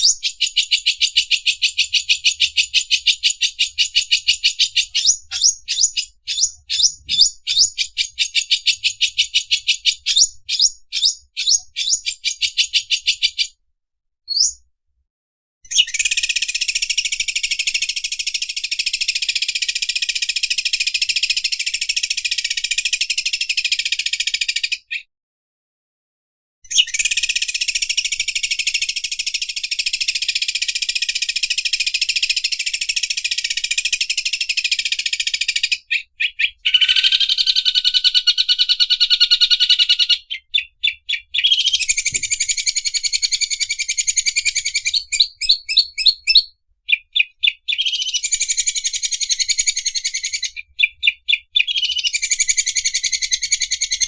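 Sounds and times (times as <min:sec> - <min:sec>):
bird singing mechanical rattle: 0:26.7 - 0:54.0.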